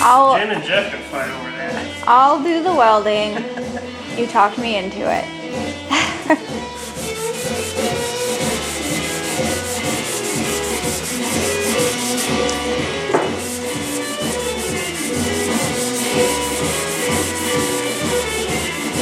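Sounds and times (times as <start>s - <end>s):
sandpaper rasping on car panel: 6.7s - 12.5s, 13.2s - 19.0s.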